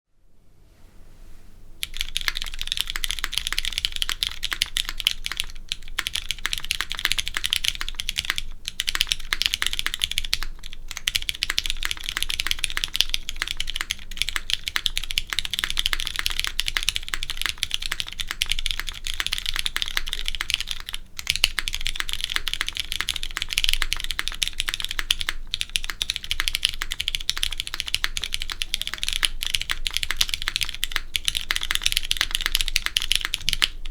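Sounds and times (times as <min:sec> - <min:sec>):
fast mechanical keyboard typing: 0:01.8 - 0:33.9.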